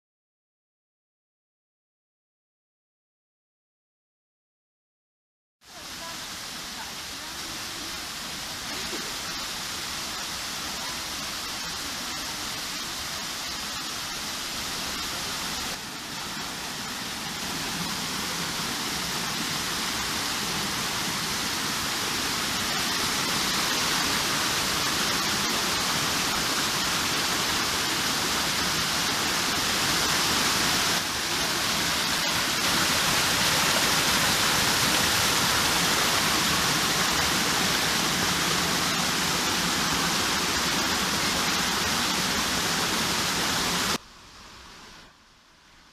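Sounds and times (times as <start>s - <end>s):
waterfall pouring into pool: 5.8s - 44.0s.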